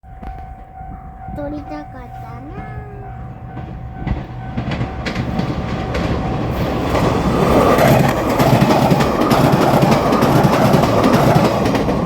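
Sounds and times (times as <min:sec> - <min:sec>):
rail noise: 0:00.0 - 0:12.0
diesel railcar engine rumble: 0:00.1 - 0:12.0.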